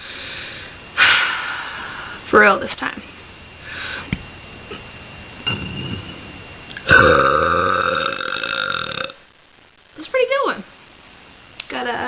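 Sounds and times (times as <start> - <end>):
person burping: 5.5 - 6.1, 6.8 - 9.2.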